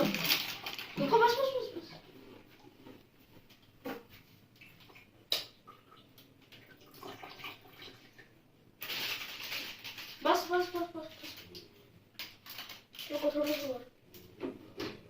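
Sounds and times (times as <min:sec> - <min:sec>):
tap water pouring into bowl: 0:04.8 - 0:08.3.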